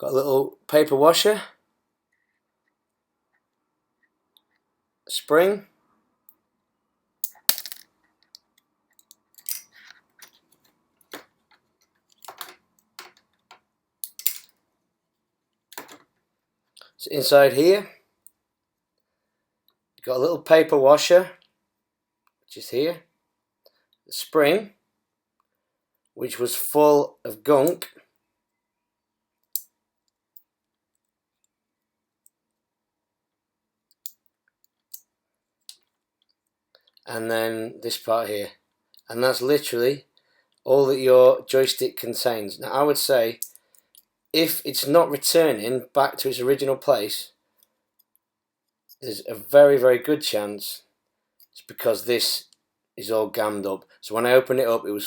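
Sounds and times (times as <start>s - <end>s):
small plastic parts clicking: 7.2s - 14.6s.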